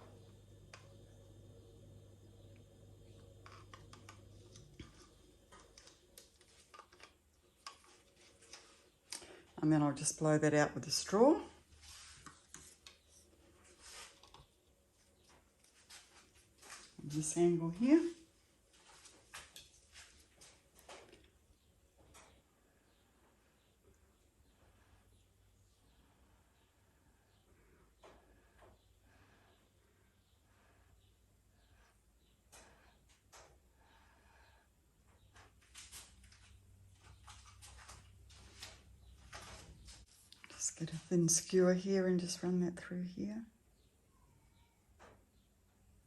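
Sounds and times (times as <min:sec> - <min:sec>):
low hum: 0:00.0 - 0:09.4.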